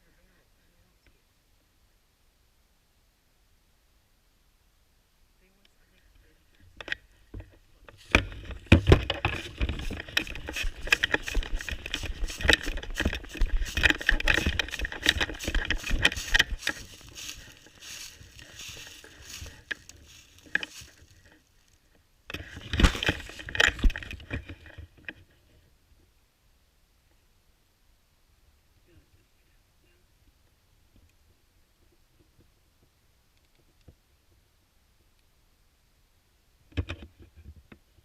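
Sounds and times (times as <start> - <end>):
rustling through dry brush: 5.9 - 25.7
camera jostling thumps: 6.8 - 21.4, 22.3 - 25.2.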